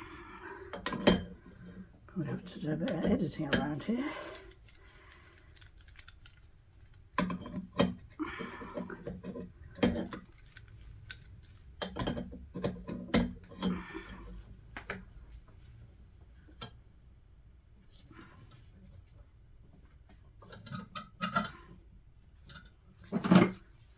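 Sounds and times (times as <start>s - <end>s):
small metal tools clinking: 2.6s - 7.6s, 9.8s - 12.2s, 23.0s - 23.6s.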